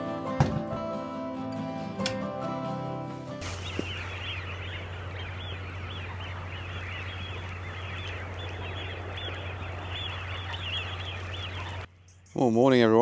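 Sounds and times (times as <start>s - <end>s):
birds chirping: 3.4s - 11.9s
steady low hum: 3.5s - 11.9s.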